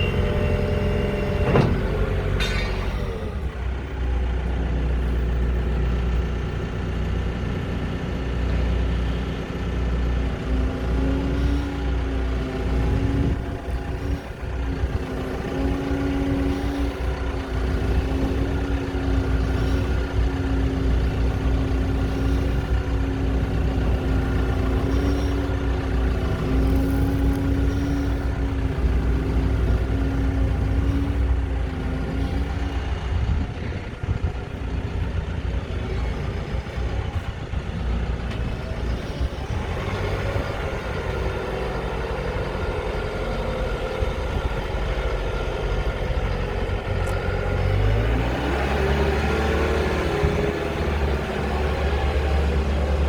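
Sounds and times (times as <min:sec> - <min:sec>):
steady whine: 0:00.0 - 0:03.6
diesel engine running: 0:00.0 - 0:53.0.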